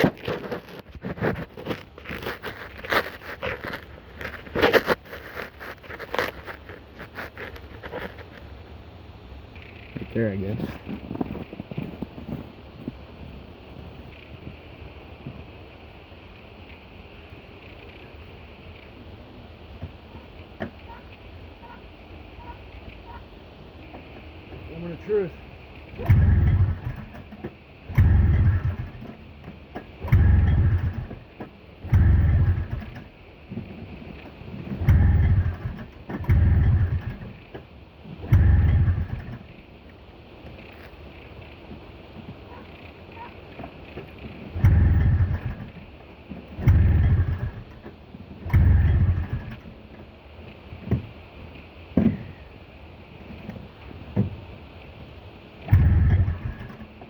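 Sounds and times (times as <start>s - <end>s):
snowmobile engine turning over: 0.0s - 8.4s, 10.0s - 13.5s, 23.8s - 39.8s, 42.5s - 52.5s, 55.6s - 57.0s.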